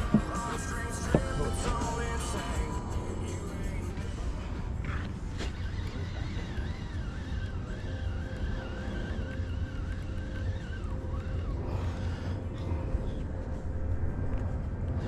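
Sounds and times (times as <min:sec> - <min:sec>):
outboard motor running: 0:00.0 - 0:14.2.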